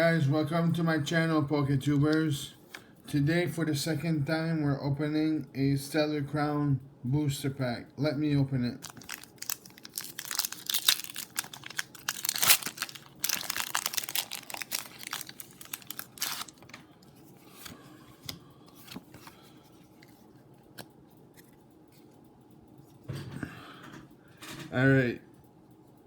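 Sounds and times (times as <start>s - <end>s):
foil wrapper tearing and crinkling: 8.8s - 16.8s.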